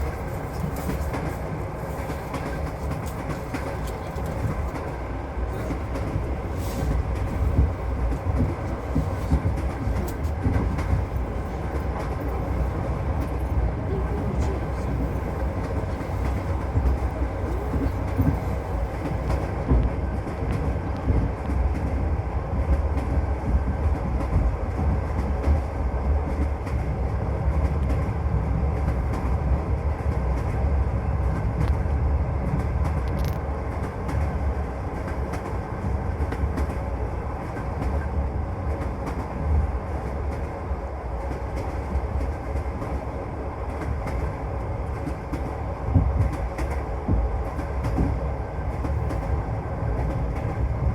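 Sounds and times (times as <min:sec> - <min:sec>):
wheels clicking on rail joints: 0:00.0 - 0:21.9
train wheels rumbling on rails: 0:00.0 - 0:50.9.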